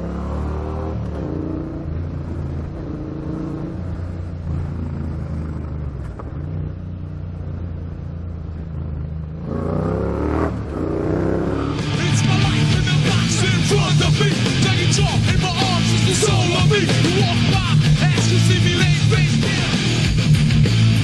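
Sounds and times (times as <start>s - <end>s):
motorcycle engine revving: 0.0s - 21.0s
rock music: 11.3s - 21.0s.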